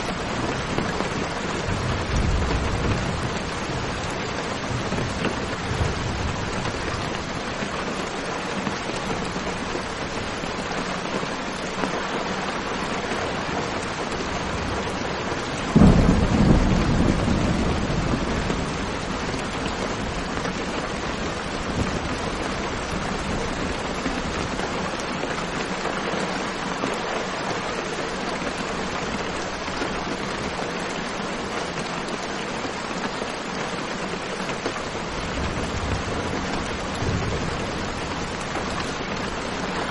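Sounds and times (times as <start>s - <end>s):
steady rain falling: 0.0s - 39.9s
thunder clap: 15.7s - 20.2s.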